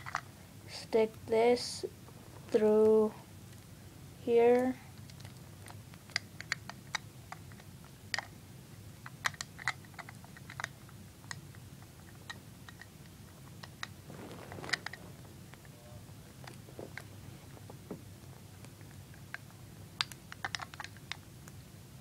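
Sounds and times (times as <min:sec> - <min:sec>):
brief rustle: 0:14.1 - 0:15.8.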